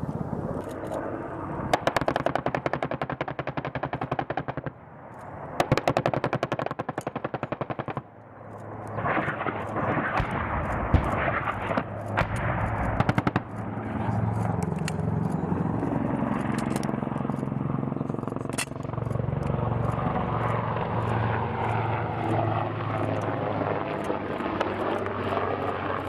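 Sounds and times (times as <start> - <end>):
machine gun firing bursts: 1.7 - 4.8, 5.6 - 8.1, 9.0 - 13.6
steady low hum: 6.8 - 26.0.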